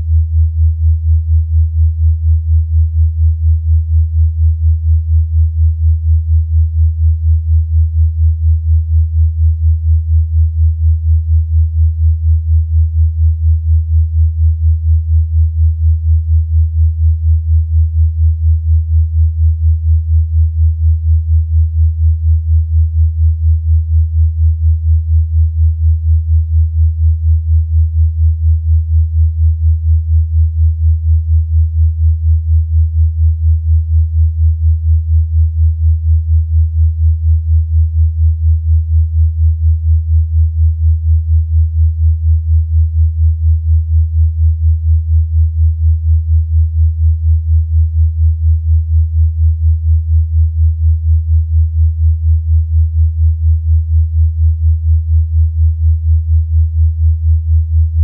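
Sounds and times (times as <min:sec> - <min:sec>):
pulsing low synthesized tone: 0:08.1 - 0:58.0.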